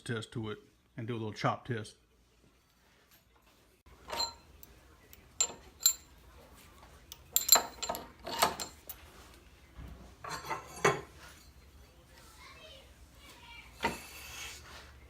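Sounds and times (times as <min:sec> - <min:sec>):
metallic clinks of steel tools: 0:04.1 - 0:06.1, 0:07.1 - 0:09.0.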